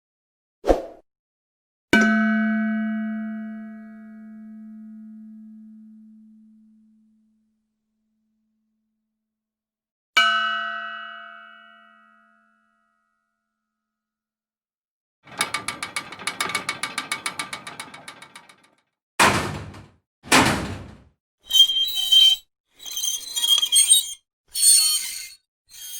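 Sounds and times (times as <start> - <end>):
metallic clinking and scraping: 15.3 - 18.6, 21.5 - 25.9
ratcheting metal clicks: 15.3 - 18.7
heavy metal clanks: 15.3 - 21.0.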